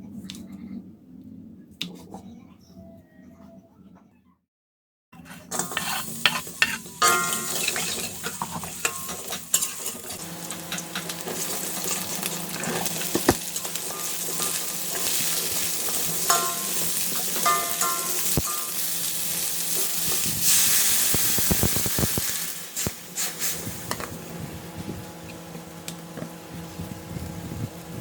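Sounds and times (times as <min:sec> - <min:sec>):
spatula scraping a pan: 0:05.2 - 0:20.9
food sizzling in hot oil: 0:05.5 - 0:24.1.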